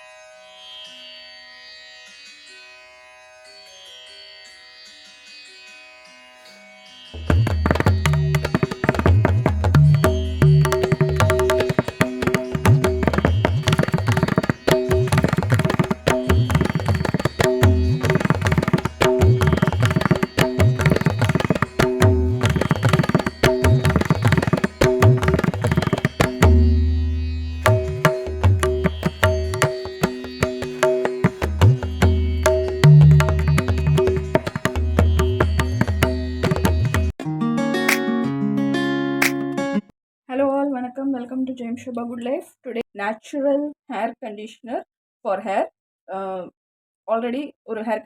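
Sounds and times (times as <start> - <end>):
instrumental music with fast percussion: 7.2 - 37.2.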